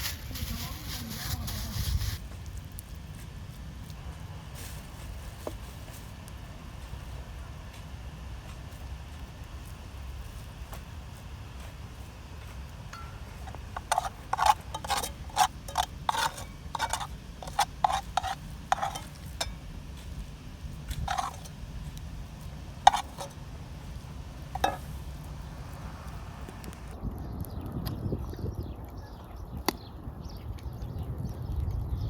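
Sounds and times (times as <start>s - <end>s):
steady low rumble: 0.0s - 28.8s.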